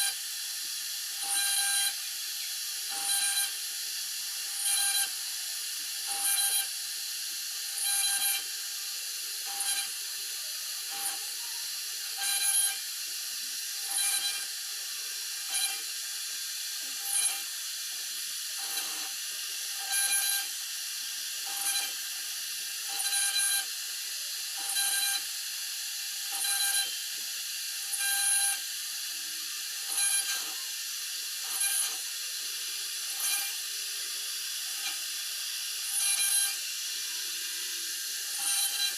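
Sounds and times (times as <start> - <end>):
router spindle whining: 7.5 - 20.6, 26.2 - 38.9
bit cutting into board: 9.5 - 9.9, 16.9 - 17.4, 29.8 - 30.6, 31.5 - 32.0, 33.1 - 33.6, 35.8 - 36.6, 38.3 - 38.9.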